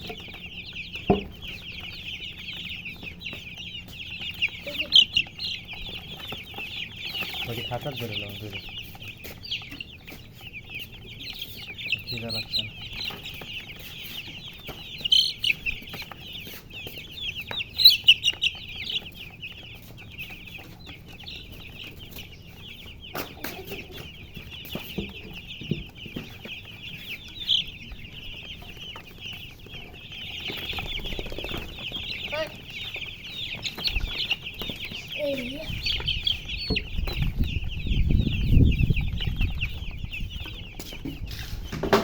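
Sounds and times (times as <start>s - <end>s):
baby chicks peeping: 0.0s - 42.0s.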